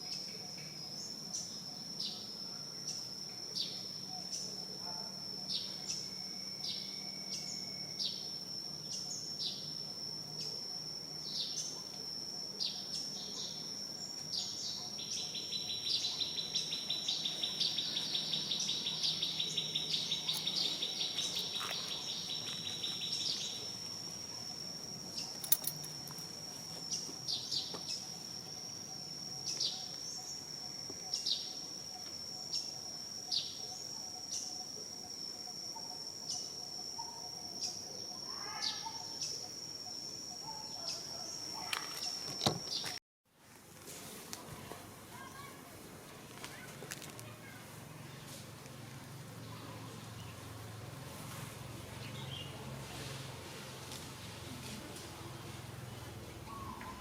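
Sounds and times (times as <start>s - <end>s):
high-pitched insect drone: 0.0s - 43.0s.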